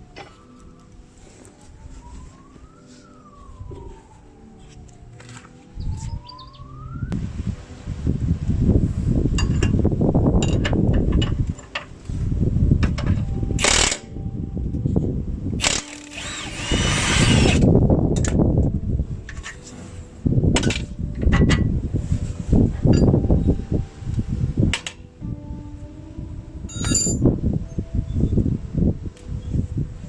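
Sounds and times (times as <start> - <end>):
power tool running: 15.6 - 17.7.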